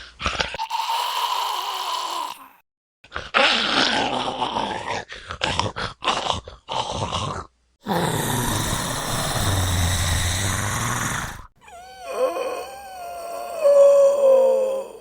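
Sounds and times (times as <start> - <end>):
zombie growls: 0.2 - 15.0
breathy rasping growl: 7.8 - 15.0
wavering pitched moan: 7.9 - 15.0.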